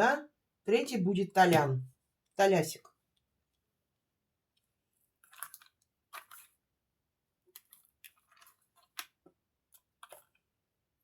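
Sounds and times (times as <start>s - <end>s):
cards snapping and rustling: 5.2s - 6.6s, 7.5s - 9.2s, 9.8s - 10.4s.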